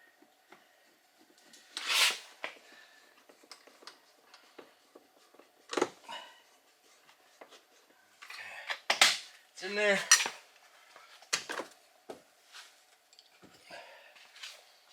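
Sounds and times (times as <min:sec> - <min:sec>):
scraping rustle: 0:01.6 - 0:02.3.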